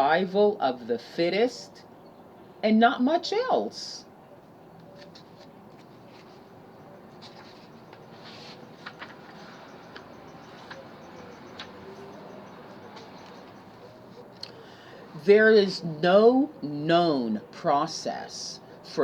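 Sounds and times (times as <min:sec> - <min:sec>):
light rustles: 0:04.8 - 0:14.6.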